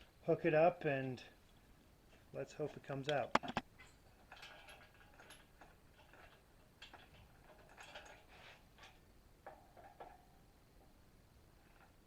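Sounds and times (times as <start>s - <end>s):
metallic chain clicks and rattles: 3.8s - 10.4s.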